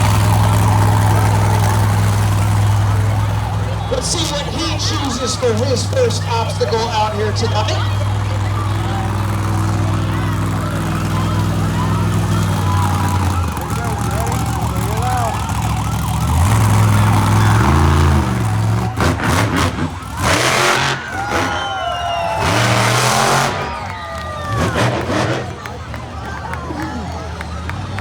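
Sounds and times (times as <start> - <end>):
monster truck engine revving: 0.0 - 28.0.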